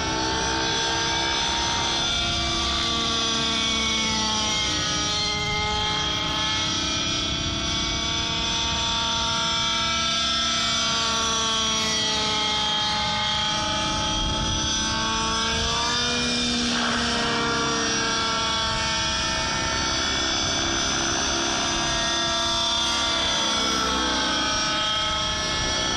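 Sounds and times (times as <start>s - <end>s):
radio-controlled helicopter engine and rotor: 0.0s - 25.9s.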